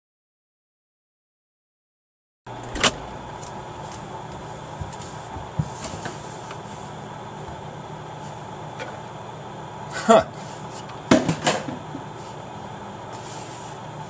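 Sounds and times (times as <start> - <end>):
indoor hum: 2.5 - 14.0.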